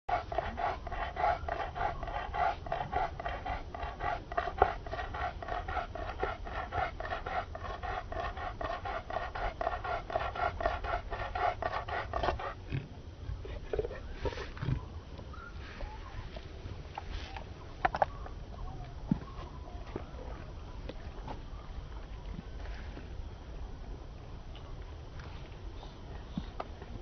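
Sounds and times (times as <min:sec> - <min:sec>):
hard rapid panting: 0:00.1 - 0:12.6.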